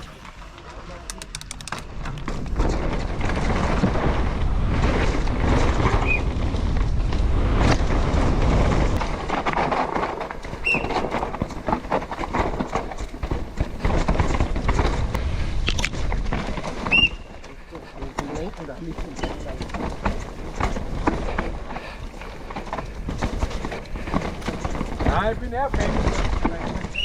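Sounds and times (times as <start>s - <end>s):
bike rattling over bumps: 0.0s - 27.0s
bike tyre noise on trail: 0.0s - 27.0s
short high squeaks: 16.9s - 17.3s.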